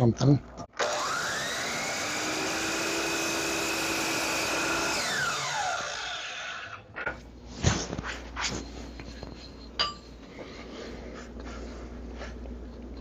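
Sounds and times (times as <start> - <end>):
miter saw whine: 0.8 - 6.9.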